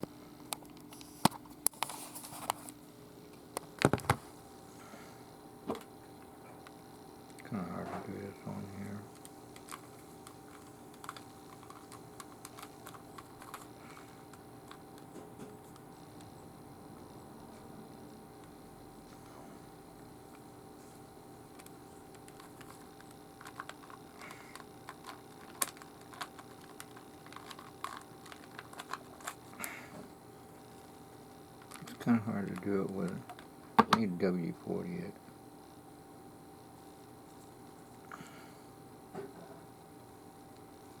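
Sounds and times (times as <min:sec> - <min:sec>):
puzzle cube plastic clicks: 0:09.2 - 0:14.8, 0:21.5 - 0:29.6
plastic puzzle cube clicking: 0:23.4 - 0:29.4.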